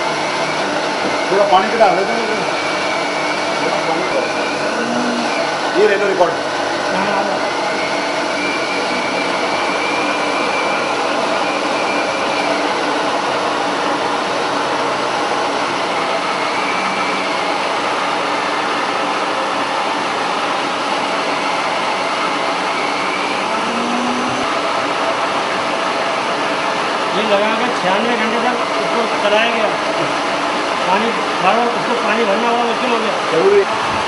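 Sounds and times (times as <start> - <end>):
faint high whine: 15.9 - 17.8, 22.8 - 24.6.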